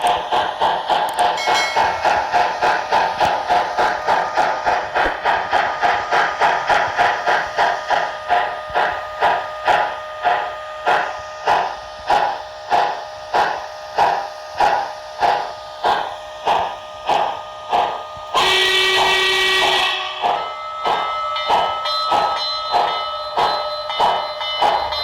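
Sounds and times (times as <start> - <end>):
model steam locomotive chuffs: 0.0 - 25.0
multi-note steam whistle: 7.9 - 25.0.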